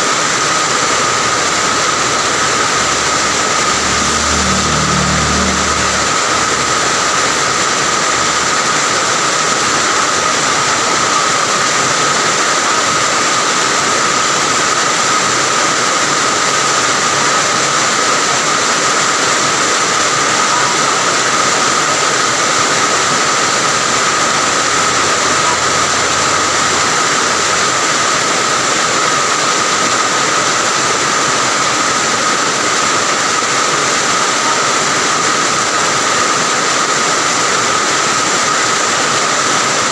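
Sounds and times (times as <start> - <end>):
low vehicle engine hum: 0.2 - 11.7, 19.4 - 29.9.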